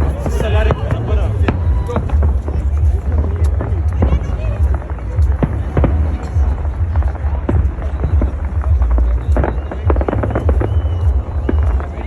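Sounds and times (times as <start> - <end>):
crowd voices: 0.0 - 12.0
fireworks bangs and crackles: 0.0 - 12.0
low rumble: 0.0 - 12.0.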